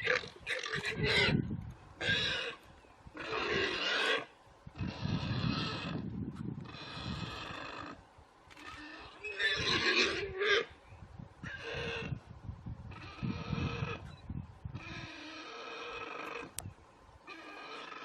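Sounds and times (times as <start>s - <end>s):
animal crying out: 0.0s - 2.6s, 3.2s - 6.0s, 6.6s - 10.8s, 11.4s - 12.2s, 12.9s - 14.1s, 14.7s - 16.5s, 17.3s - 18.0s.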